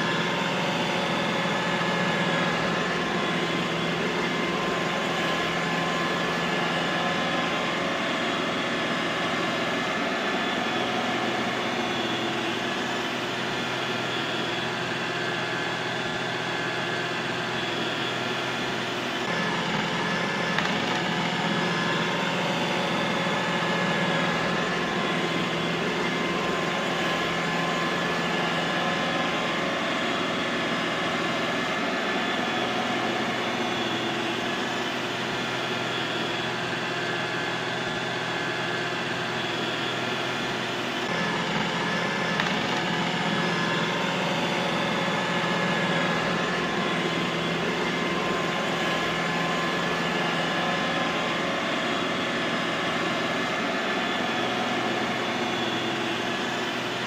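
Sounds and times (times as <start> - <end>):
robot vacuum motor hum: 0.0 - 57.0.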